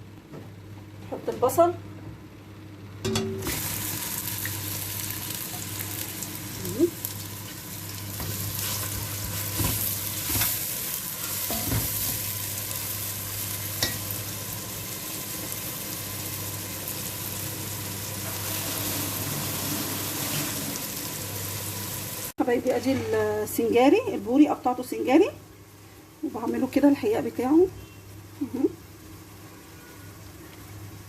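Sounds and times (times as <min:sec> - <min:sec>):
onion sizzling in oil: 0:03.3 - 0:31.0.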